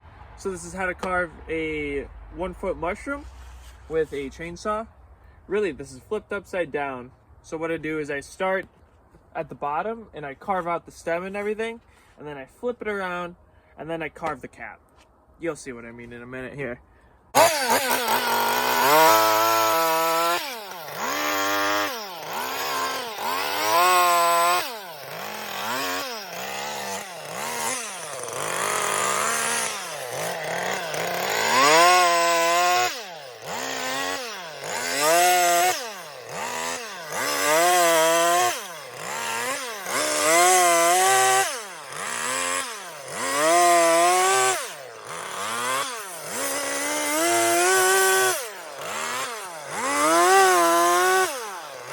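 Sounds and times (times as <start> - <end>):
chainsaw revving into wood: 17.3 - 51.9.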